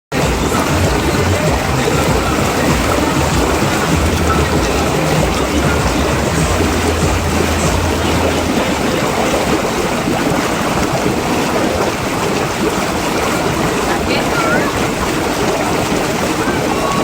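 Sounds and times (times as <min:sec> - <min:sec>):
rushing water: 0:00.1 - 0:17.0
low hum: 0:00.3 - 0:10.3.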